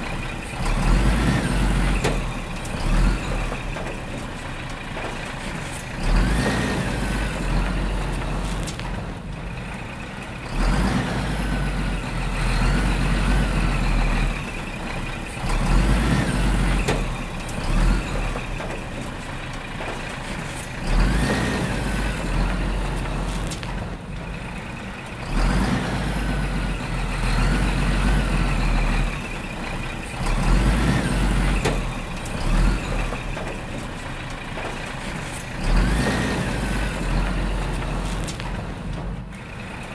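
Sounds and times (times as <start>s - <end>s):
heavy machine engine revving: 0.0s - 39.9s.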